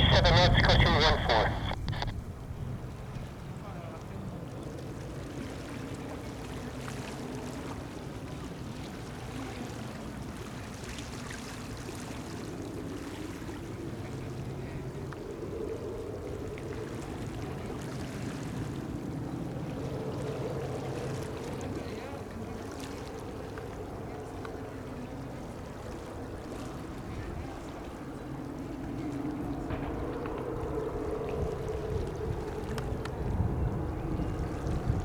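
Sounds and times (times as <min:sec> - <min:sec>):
wind noise on microphone: 0:00.0 - 0:03.4, 0:29.0 - 0:35.0
turboprop aircraft drone: 0:00.0 - 0:03.5.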